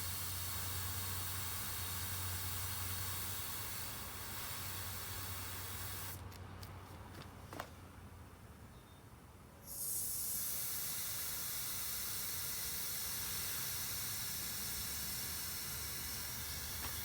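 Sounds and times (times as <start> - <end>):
air hissing out of tire: 0.0 - 6.2, 9.6 - 17.0.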